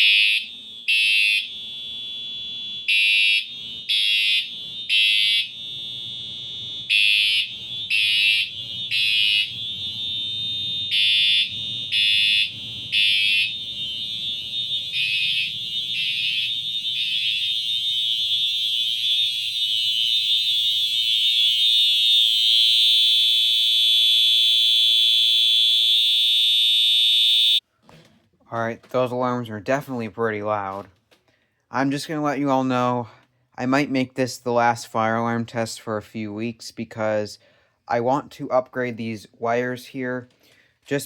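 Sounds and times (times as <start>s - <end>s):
pulsing fire alarm horn: 0.0s - 27.6s
steady fire alarm horn: 0.0s - 27.6s.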